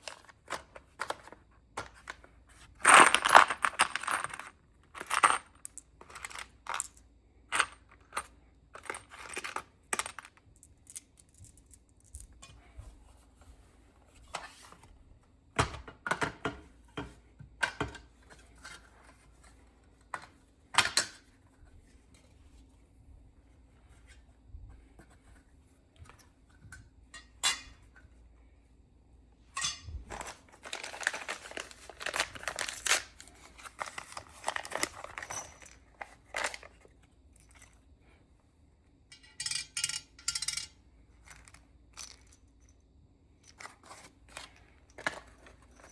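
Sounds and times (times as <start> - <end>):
metal parts clinking: 2.8 - 12.5, 29.5 - 36.7, 39.1 - 42.8.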